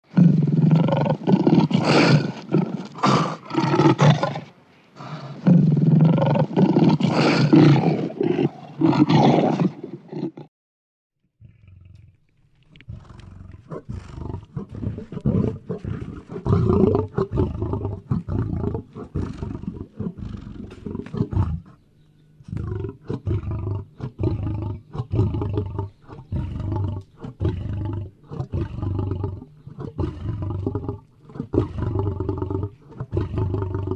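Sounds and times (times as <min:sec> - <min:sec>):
lion growling: 0:12.8 - 0:33.9.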